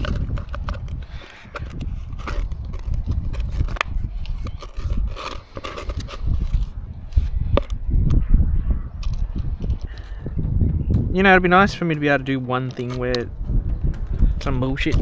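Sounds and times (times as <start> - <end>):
clicks knocks and scrapes: 0.0 - 7.8, 12.6 - 15.0
wind rumbling on microphone: 0.0 - 15.0.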